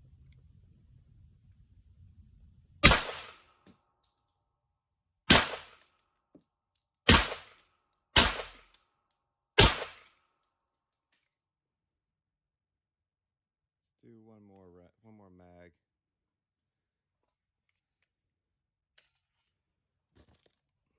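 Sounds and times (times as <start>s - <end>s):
pistol shots: 2.8s - 3.4s, 5.3s - 5.8s, 7.1s - 7.6s, 8.2s - 8.7s, 9.6s - 10.1s.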